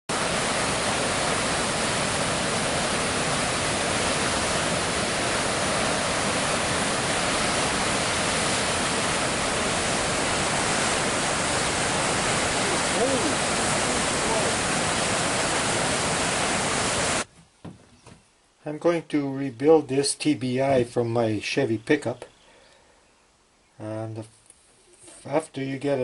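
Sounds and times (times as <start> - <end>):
steady rushing hiss: 0.1 - 17.3.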